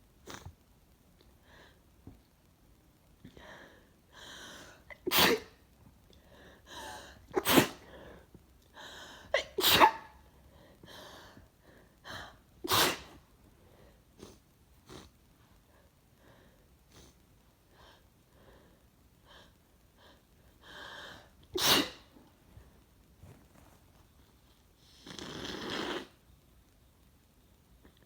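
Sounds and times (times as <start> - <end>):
woman sneezing: 7.4 - 7.9, 9.4 - 10.1, 12.7 - 13.2, 21.6 - 22.1
sniffs: 14.2 - 15.1, 24.8 - 26.2.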